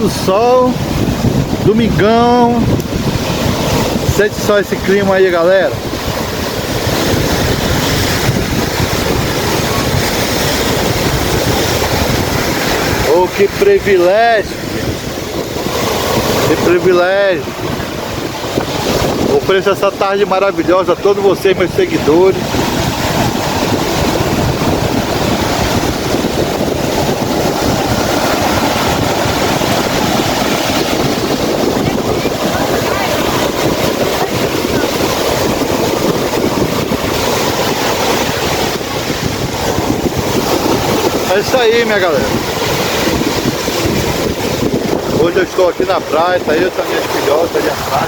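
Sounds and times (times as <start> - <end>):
surf breaking on beach: 0.0 - 48.0
wind on microphone: 0.0 - 48.0.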